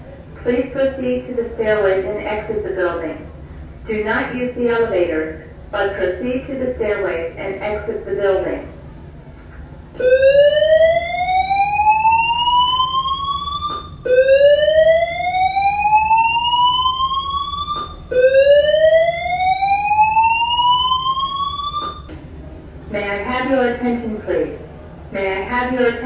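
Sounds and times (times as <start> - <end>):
fire alarm whoop tone: 10.0 - 22.2.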